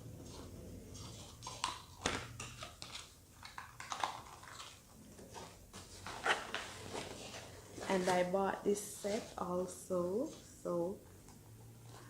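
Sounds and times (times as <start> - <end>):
packaging crinkling: 1.0 - 8.3.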